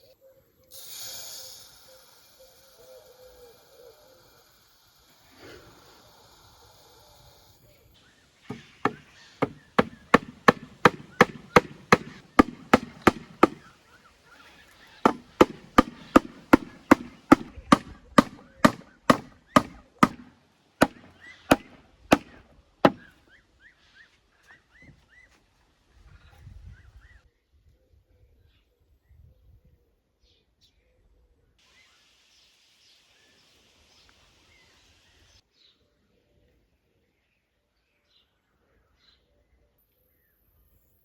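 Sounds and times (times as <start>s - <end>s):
knife chopping on wooden board: 8.5s - 13.7s, 15.1s - 23.1s.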